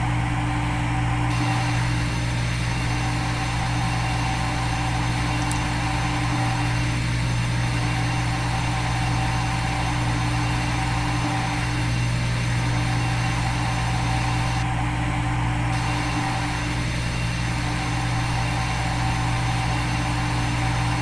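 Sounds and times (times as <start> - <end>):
milling machine humming: 0.0 - 21.0.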